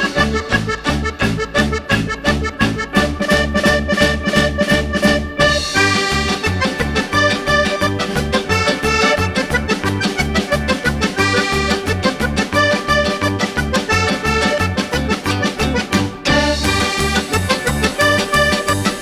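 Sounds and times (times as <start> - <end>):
upbeat accordion music: 0.0 - 19.0.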